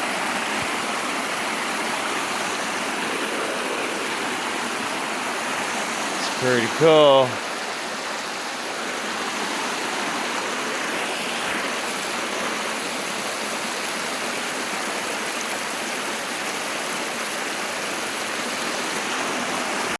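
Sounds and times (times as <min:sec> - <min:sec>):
small waterfall splashing: 0:00.0 - 0:19.9.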